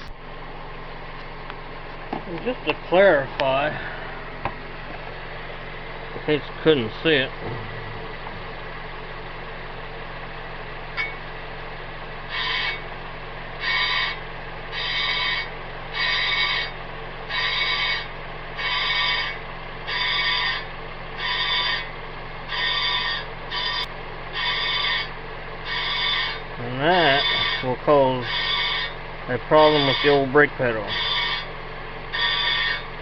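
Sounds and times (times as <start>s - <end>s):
engine hum: 0.0s - 33.0s
brake rotor scraping pad: 12.2s - 33.0s.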